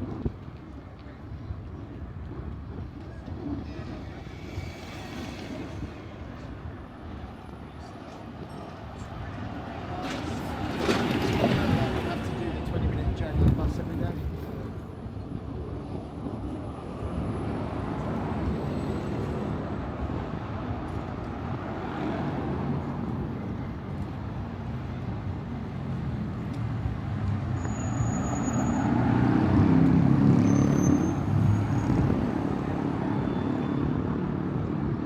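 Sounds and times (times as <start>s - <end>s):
road traffic: 0.0s - 35.0s.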